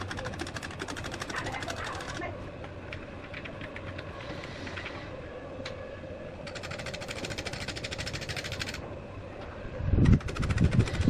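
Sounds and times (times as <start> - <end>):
fast even clicking: 0.0 - 2.3, 6.5 - 8.8, 10.0 - 11.0.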